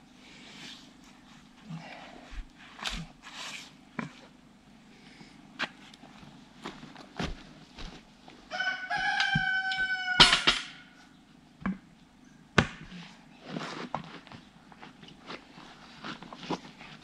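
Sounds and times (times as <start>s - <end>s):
rooster crowing: 8.5s - 11.0s.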